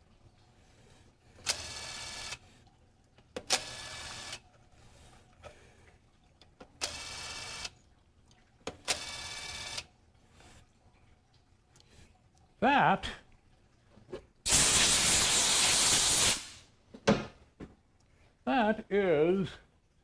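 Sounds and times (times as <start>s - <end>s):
compressed air blasts: 14.5s - 16.7s.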